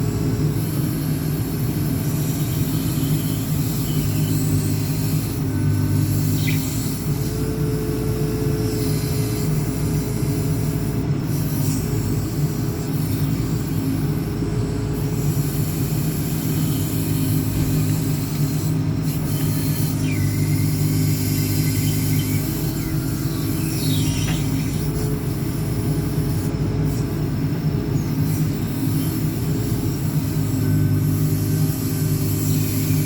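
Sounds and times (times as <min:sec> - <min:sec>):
diesel engine running: 0:00.0 - 0:33.0.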